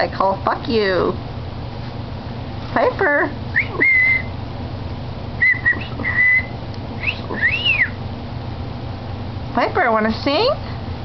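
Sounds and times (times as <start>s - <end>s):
cockatiel whistling: 3.5s - 4.4s, 5.4s - 8.0s.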